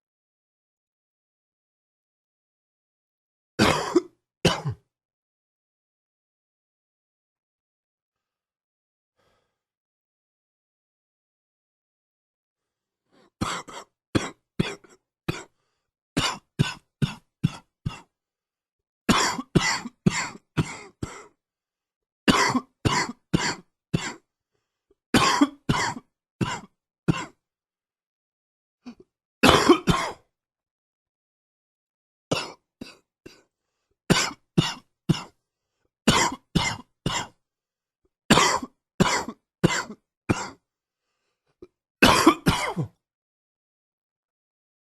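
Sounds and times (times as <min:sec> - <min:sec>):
man coughing: 0:03.6 - 0:04.8, 0:13.4 - 0:15.5, 0:16.2 - 0:18.1, 0:19.1 - 0:21.3, 0:22.3 - 0:24.2, 0:25.2 - 0:27.4, 0:29.4 - 0:30.2, 0:36.1 - 0:37.3, 0:38.3 - 0:40.6, 0:42.0 - 0:43.0.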